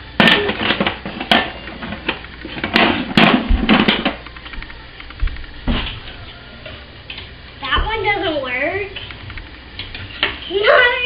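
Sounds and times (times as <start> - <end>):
kitchen objects knocking and clattering: 0.2 - 4.2.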